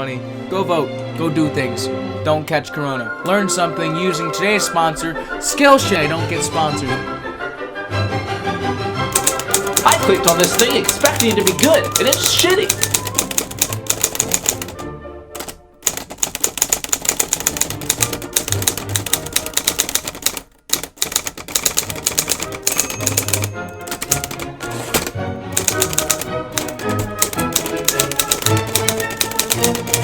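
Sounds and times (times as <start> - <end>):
background music: 0.0 - 30.0
typewriter typing rapidly: 9.1 - 14.8, 15.4 - 30.0.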